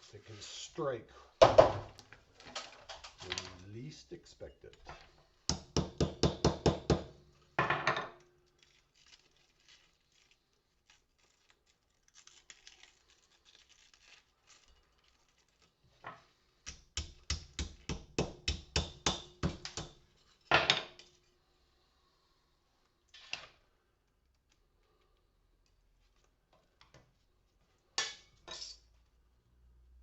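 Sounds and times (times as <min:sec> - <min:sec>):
small clicks and scrapes: 0:08.4 - 0:16.3
porcelain cracking strikes: 0:16.6 - 0:21.2.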